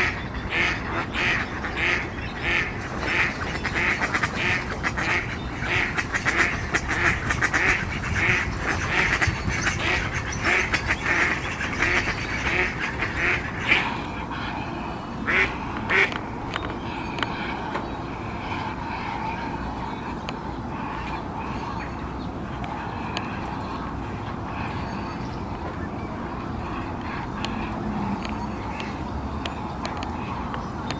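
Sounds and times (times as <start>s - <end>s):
mallards quacking: 0.0s - 14.6s, 15.2s - 17.4s.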